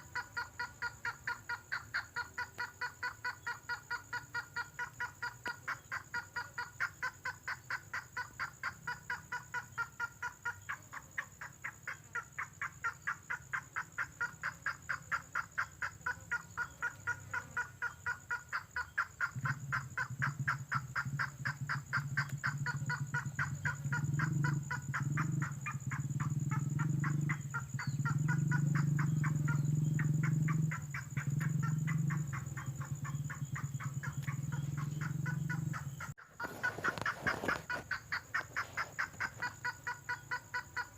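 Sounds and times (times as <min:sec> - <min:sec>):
bird calls in pulsed notes: 0:11.4 - 0:38.3.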